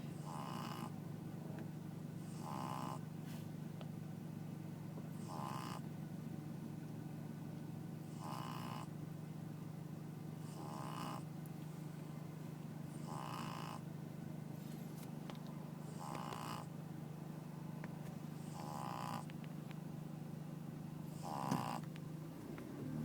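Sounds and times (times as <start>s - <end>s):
dog snoring: 0.0s - 1.0s, 2.2s - 3.1s, 5.1s - 5.8s, 8.0s - 8.9s, 10.4s - 11.3s, 12.8s - 13.9s, 15.8s - 16.7s, 18.4s - 19.3s, 21.0s - 23.0s.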